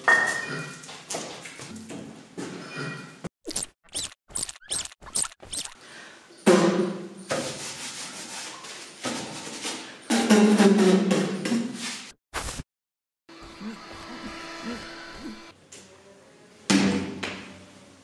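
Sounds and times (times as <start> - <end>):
squeaky rubbing sounds: 3.4 - 5.8.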